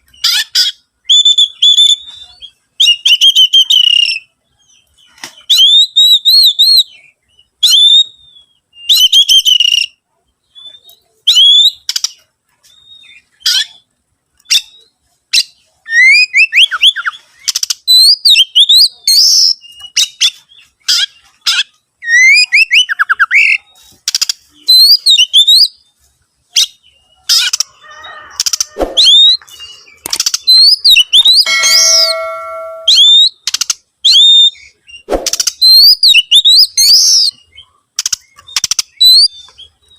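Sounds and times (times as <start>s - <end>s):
bird singing whistled phrases: 28.6s - 33.4s.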